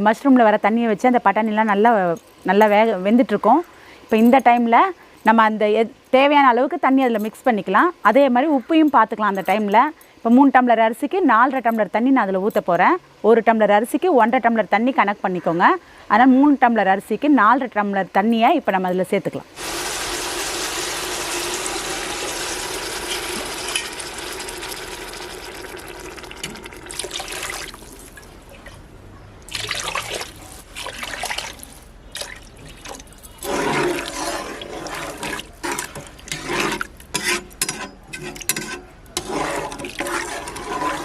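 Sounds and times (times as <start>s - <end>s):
water pouring into a pot: 19.6s - 28.3s, 29.5s - 37.0s
water splashing: 19.6s - 28.8s, 29.5s - 37.0s.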